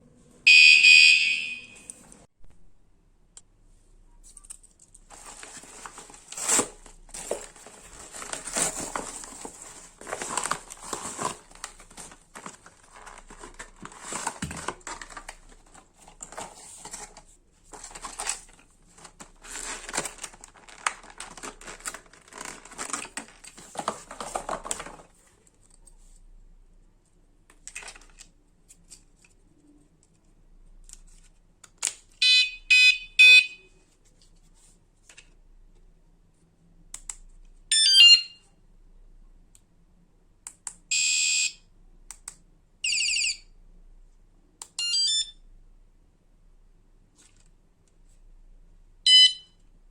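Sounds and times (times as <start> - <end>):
bicycle alarm short beeps: 0.5 - 1.9, 32.2 - 33.7, 49.1 - 49.5
packaging crinkling and rustling: 4.3 - 25.4.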